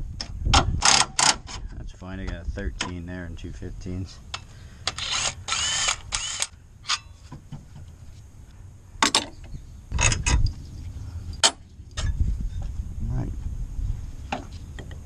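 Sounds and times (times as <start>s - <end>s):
cordless power tool spinning bolts: 4.9s - 6.5s.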